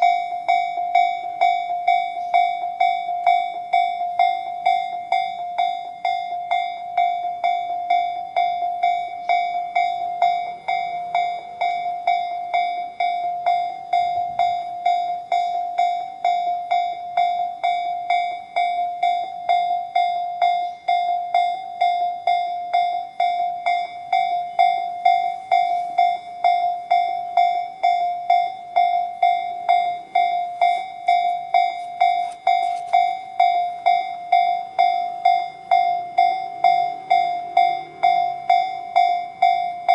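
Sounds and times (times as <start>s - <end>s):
level crossing warning bells: 0.0s - 39.9s.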